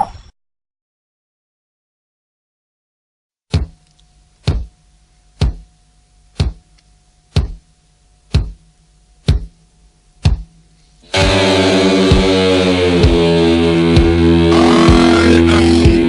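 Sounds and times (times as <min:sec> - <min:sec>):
faint steady hum: 0:03.7 - 0:11.1
deep drum hits: 0:10.2 - 0:10.6, 0:11.2 - 0:16.0.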